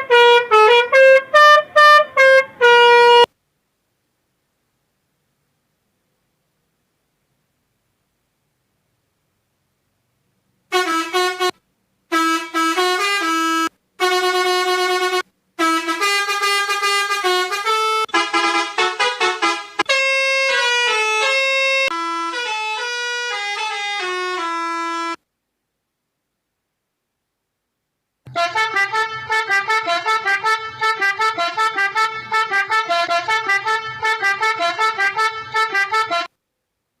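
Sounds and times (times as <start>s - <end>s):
melodica playing: 0.0s - 3.3s, 10.7s - 11.5s, 12.1s - 25.2s, 28.3s - 36.3s
toy pianika horn-like tune: 0.0s - 3.3s, 10.7s - 25.2s, 28.3s - 36.3s.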